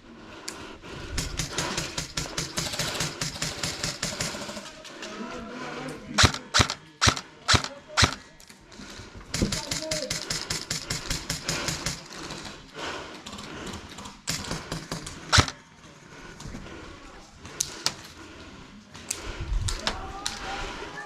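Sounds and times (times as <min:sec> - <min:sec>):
airsoft gun shots: 0:06.2 - 0:08.2.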